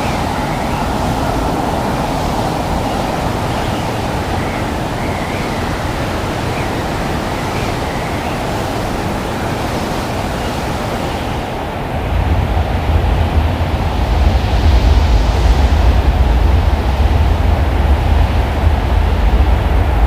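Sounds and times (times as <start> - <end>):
blizzard wind blowing: 0.0 - 20.0.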